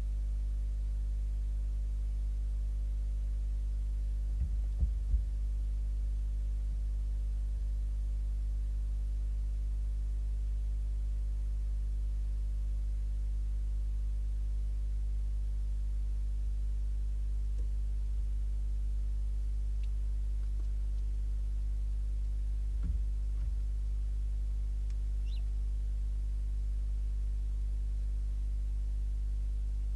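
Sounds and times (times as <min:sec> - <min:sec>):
electrical mains hum: 0:00.0 - 0:29.9
faint ticks: 0:17.5 - 0:17.8, 0:19.7 - 0:24.1, 0:24.7 - 0:25.5.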